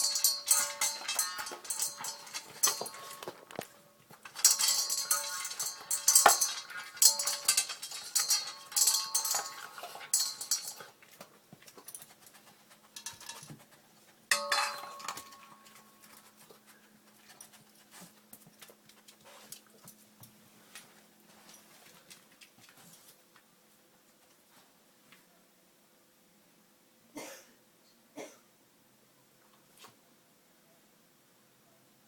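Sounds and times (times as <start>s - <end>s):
dish rattling on floor: 0.0s - 16.2s
dog eating from a dish: 0.0s - 20.1s.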